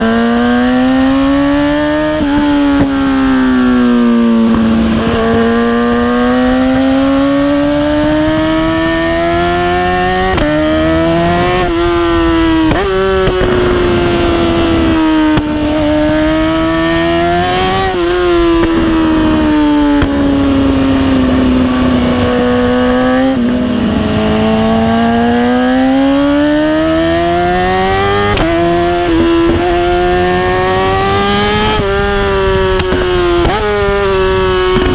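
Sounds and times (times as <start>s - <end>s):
motorcycle engine revving: 0.0s - 34.9s
exhaust pops and crackles: 12.6s - 14.3s, 15.3s - 15.8s, 20.0s - 20.2s, 32.7s - 33.9s, 34.7s - 34.9s.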